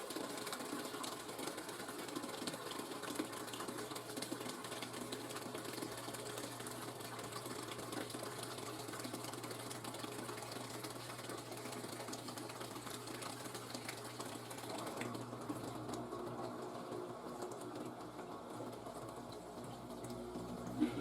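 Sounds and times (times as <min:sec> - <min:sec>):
washing machine spinning: 0:00.0 - 0:21.0.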